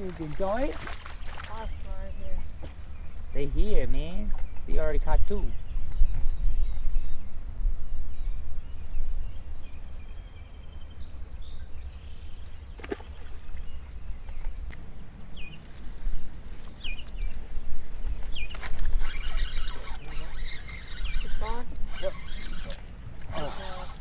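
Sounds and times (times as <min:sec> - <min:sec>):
bird chirps: 0:08.1 - 0:15.7, 0:16.8 - 0:17.5, 0:18.2 - 0:23.8.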